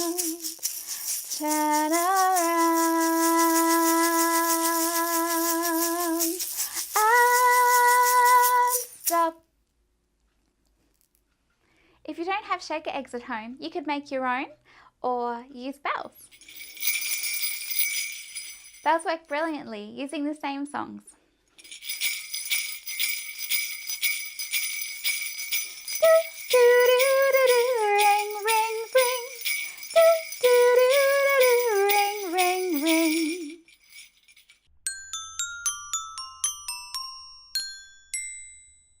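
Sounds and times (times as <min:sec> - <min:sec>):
jingle bells shaken: 0:00.0 - 0:09.4, 0:16.2 - 0:19.6, 0:21.6 - 0:38.8
person singing: 0:00.0 - 0:09.4, 0:25.8 - 0:33.6.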